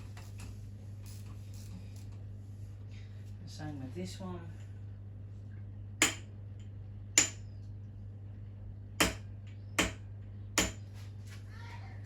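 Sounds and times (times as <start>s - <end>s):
hammer tapping centre punch: 9.0s - 10.0s.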